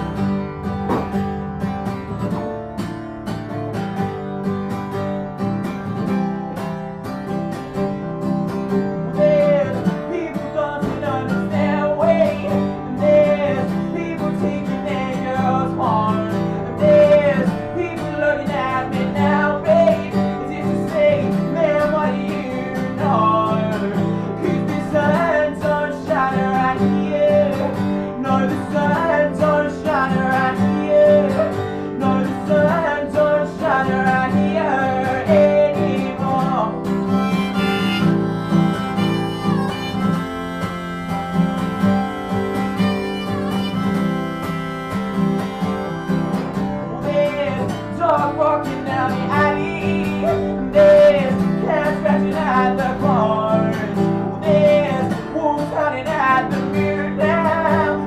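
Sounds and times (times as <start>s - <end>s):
acoustic guitar playing: 0.0s - 58.0s
pitch-bending melody line: 37.0s - 47.2s.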